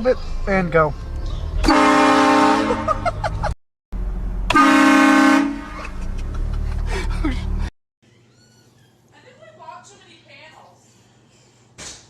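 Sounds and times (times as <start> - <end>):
air horn blasts: 1.6 - 3.0, 4.5 - 6.1.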